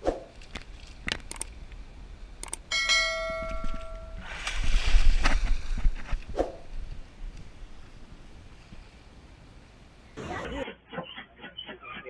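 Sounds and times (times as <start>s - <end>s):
bell-like ring: 2.7s - 4.3s.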